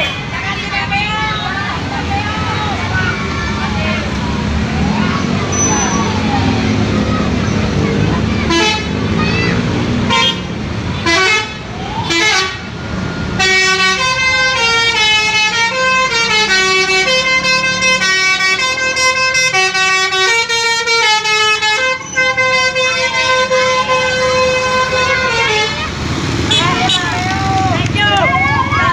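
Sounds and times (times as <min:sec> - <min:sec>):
multi-tone bus horn melody: 0:07.9 - 0:09.2, 0:09.9 - 0:12.8, 0:13.4 - 0:27.2.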